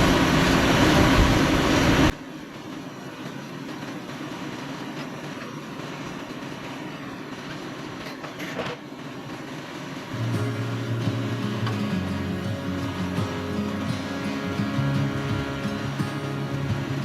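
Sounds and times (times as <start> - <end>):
sawmill machinery running: 0.0 - 8.1, 9.2 - 17.0
steady hum: 9.1 - 17.0.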